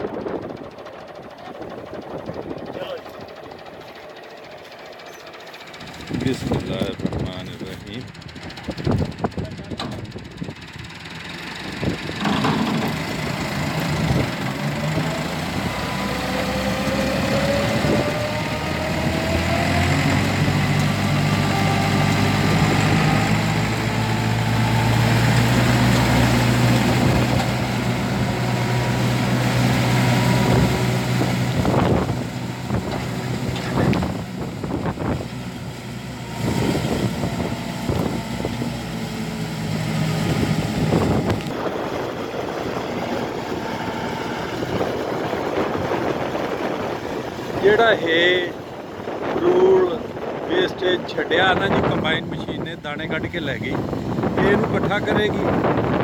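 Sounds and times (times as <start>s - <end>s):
tractor engine running: 0.0s - 56.0s
straw chopper whine: 11.7s - 56.0s.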